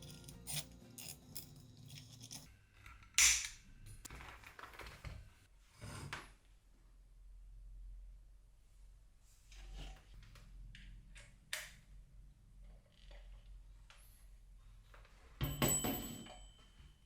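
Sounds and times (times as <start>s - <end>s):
background music: 0.0s - 2.5s.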